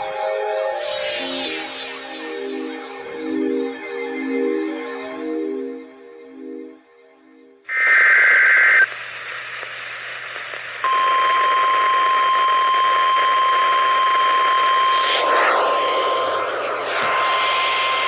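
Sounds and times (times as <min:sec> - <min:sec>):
radio hiss: 0:07.7 - 0:18.0
steady alarm tone: 0:10.9 - 0:18.0
warbling data screech: 0:14.2 - 0:18.0.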